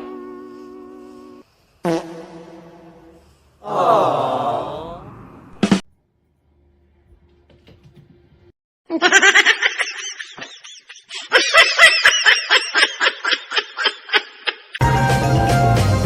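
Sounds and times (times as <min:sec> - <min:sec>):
high-pitched laughter: 0:08.9 - 0:14.8.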